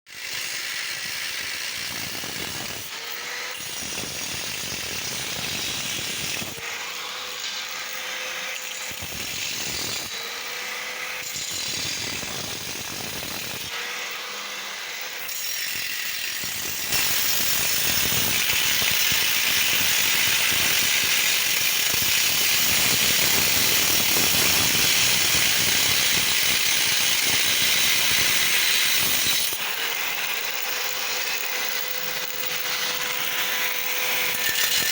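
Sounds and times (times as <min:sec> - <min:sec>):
angle grinder running: 0:00.1 - 0:34.9.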